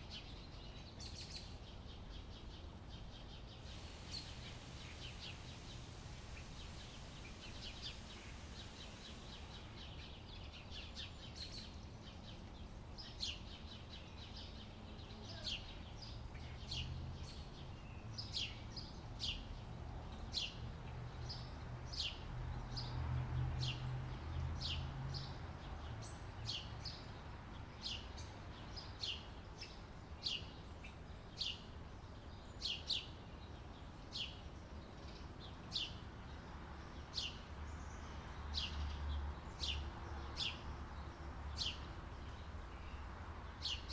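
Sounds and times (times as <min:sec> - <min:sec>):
birds chirping: 0:00.1 - 0:19.5.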